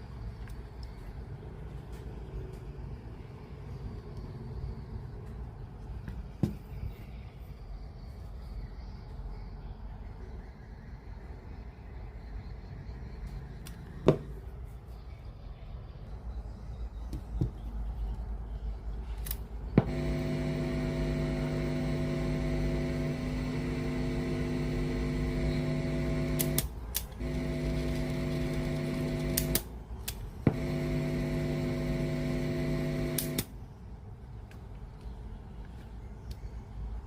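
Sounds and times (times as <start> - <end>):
sharp mechanical clicks: 19.2 - 31.5, 32.4 - 33.5
tape mechanism motor humming: 19.8 - 33.5.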